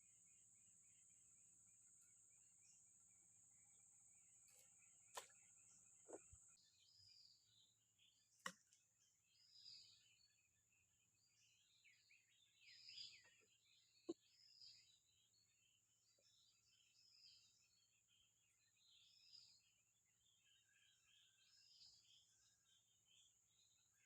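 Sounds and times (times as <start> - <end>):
insect drone: 0.0 - 8.1
faint bird chirps: 0.0 - 24.0.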